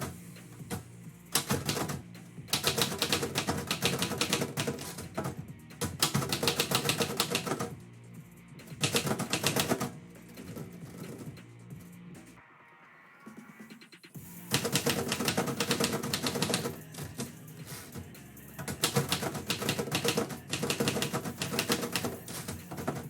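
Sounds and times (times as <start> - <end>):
background music: 0.0 - 23.0
typewriter keys clacking: 1.4 - 7.7, 8.6 - 11.3, 14.5 - 18.0, 18.6 - 23.0.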